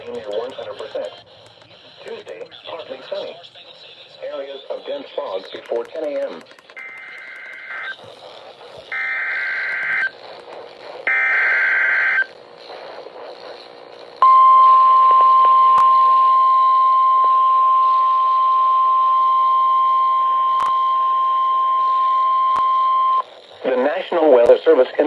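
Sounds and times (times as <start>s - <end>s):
data bursts: 0.0s - 25.0s
radio noise hiss: 0.0s - 25.0s
steady warning alarm tone: 8.9s - 10.2s, 11.0s - 12.3s, 14.2s - 23.5s.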